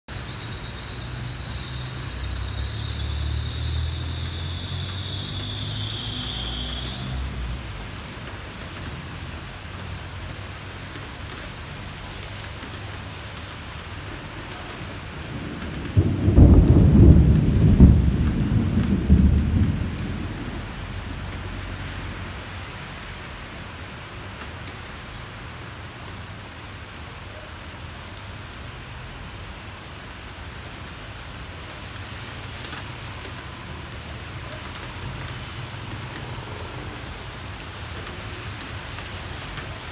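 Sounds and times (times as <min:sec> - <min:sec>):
high-pitched squeal: 0:00.1 - 0:07.8
heavy rain: 0:00.1 - 0:39.9
thunder rumbling: 0:14.4 - 0:22.3.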